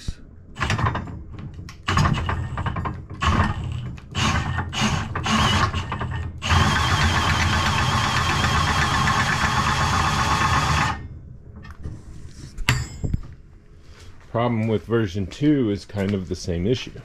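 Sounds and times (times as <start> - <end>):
screw being driven: 1.7 - 11.0.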